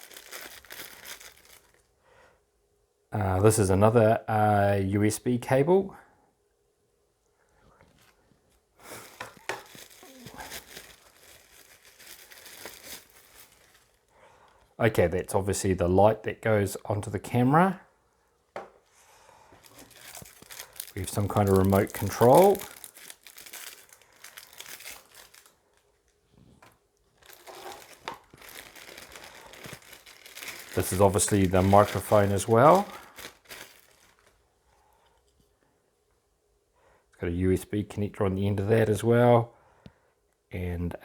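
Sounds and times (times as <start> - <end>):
packaging crinkling and rustling: 0.0 - 1.9, 7.9 - 14.1, 19.6 - 34.5.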